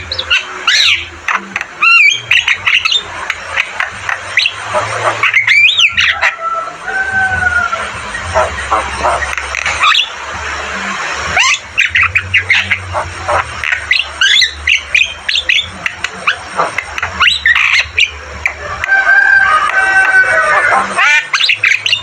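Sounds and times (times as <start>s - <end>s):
bird chattering and squawking: 0.0s - 22.0s
bird whistles: 4.1s - 10.1s.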